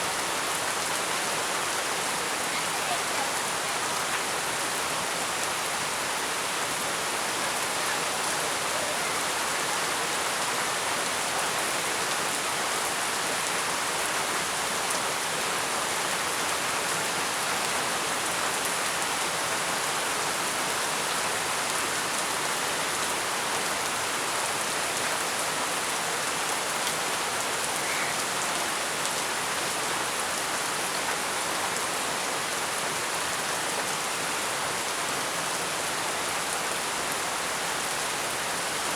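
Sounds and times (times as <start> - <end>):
heavy rain hissing: 0.0 - 10.9.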